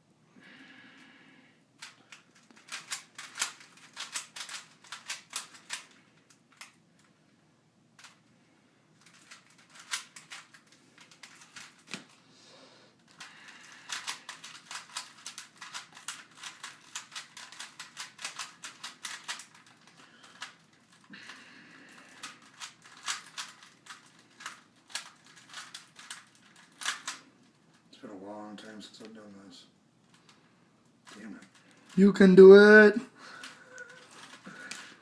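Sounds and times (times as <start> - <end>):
puzzle cube clicking and clacking: 1.8 - 6.8, 9.0 - 12.1, 13.1 - 21.1, 22.0 - 27.6.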